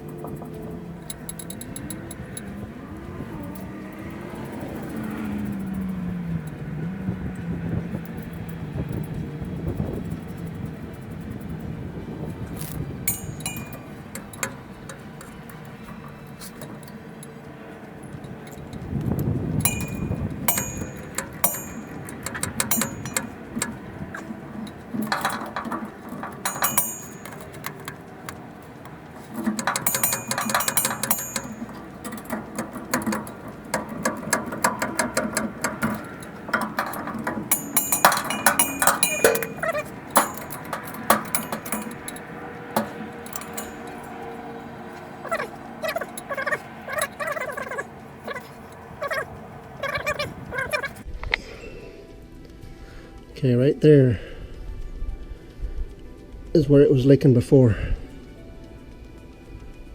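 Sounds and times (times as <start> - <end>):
ratchet clicking: 0.0 - 2.7, 8.0 - 51.0
metallic clinks and knocks: 0.0 - 51.1.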